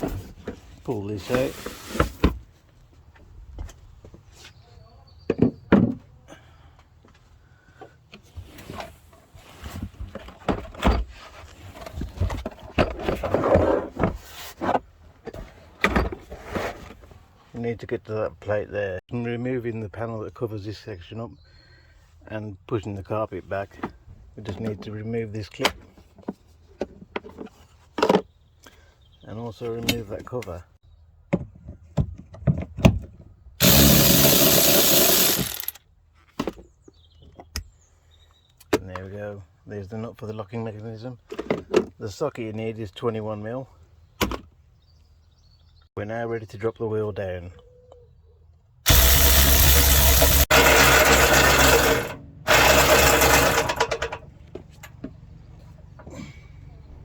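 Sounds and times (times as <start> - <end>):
carpet scraping and rustling: 0.0 - 2.7, 8.1 - 17.4
cordless power tool running: 33.6 - 35.7, 48.9 - 54.1.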